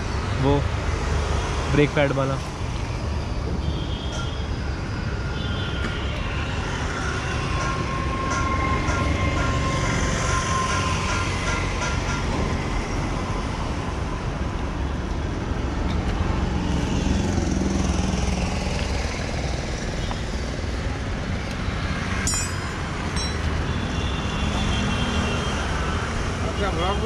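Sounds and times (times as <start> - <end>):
vehicle engines rumbling past: 6.5 - 24.7.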